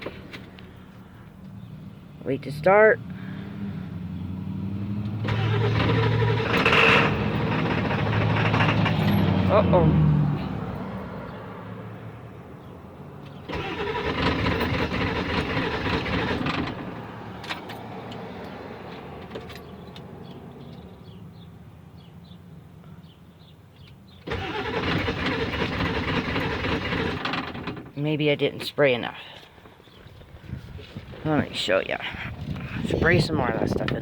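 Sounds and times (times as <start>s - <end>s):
diesel engine cranking: 0.0s - 11.4s, 13.2s - 21.2s, 23.8s - 28.2s.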